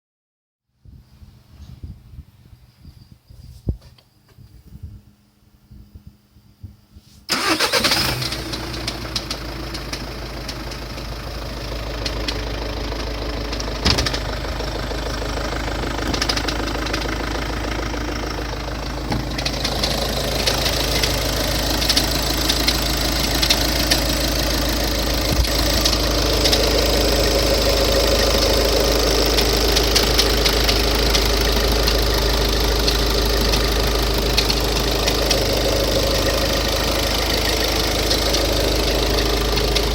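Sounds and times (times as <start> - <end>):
car engine idling: 7.3 - 39.9
car engine starting: 7.3 - 39.9.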